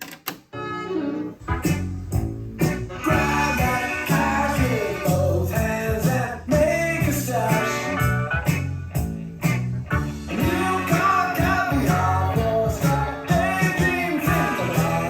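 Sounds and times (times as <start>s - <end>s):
guitar: 0.0s - 15.0s
rock song with sung vocal: 2.9s - 8.7s, 10.0s - 15.0s.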